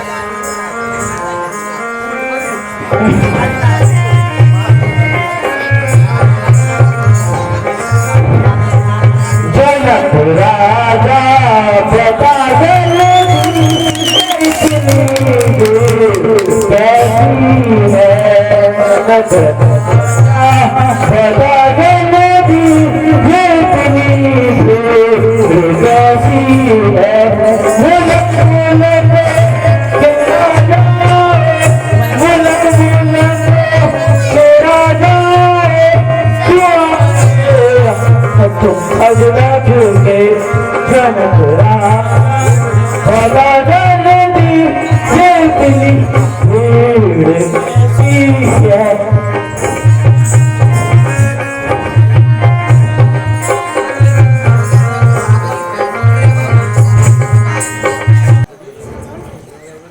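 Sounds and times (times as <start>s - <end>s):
low drum beat: 8.2s - 21.7s.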